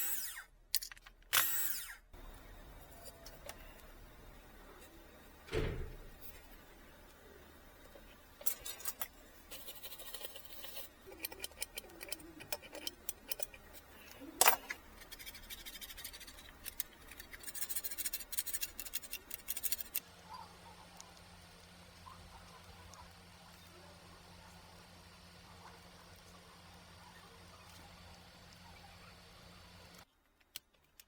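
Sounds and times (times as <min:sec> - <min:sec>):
clicks and rattles of tools on keyboard: 0:08.4 - 0:20.0.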